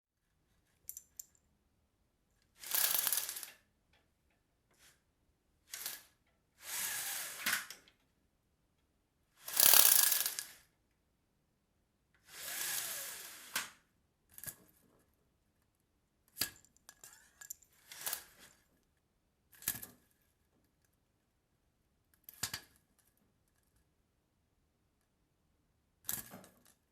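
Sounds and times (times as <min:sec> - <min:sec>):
window blinds being pulled: 0:02.6 - 0:03.6, 0:05.7 - 0:07.8, 0:09.4 - 0:10.7, 0:12.2 - 0:13.7, 0:17.8 - 0:18.6.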